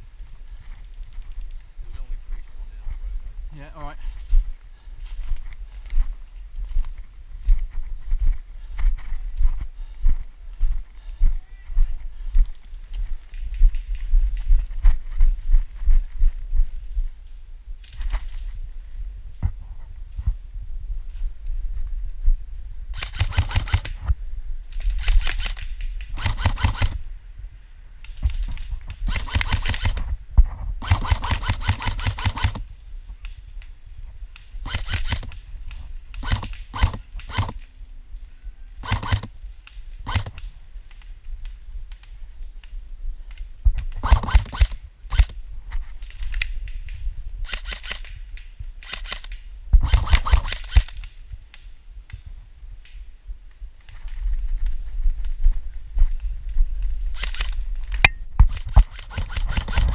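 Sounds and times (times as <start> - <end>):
airsoft guns firing bursts: 23.0 - 24.0, 25.0 - 27.0, 29.0 - 30.1, 30.8 - 32.6, 34.6 - 35.4, 36.2 - 37.6, 38.8 - 39.3, 40.0 - 40.4, 44.0 - 45.3, 47.4 - 48.1, 48.8 - 51.0, 58.4 - 59.9.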